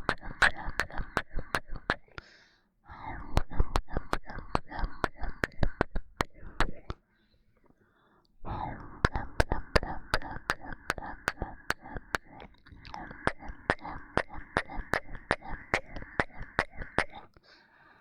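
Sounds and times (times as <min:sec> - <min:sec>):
kissing lip smacks: 0:00.0 - 0:02.2, 0:03.3 - 0:07.0, 0:09.0 - 0:17.4.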